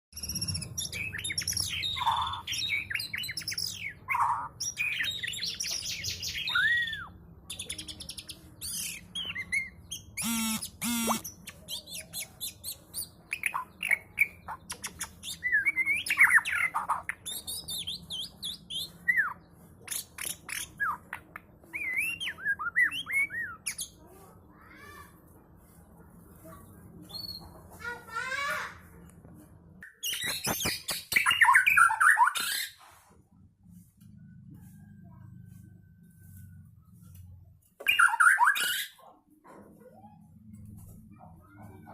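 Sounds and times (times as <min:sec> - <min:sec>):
songbird singing whistled song: 0:00.2 - 0:24.0, 0:37.8 - 0:39.0
buzzy rattling bird phrase: 0:07.6 - 0:11.6.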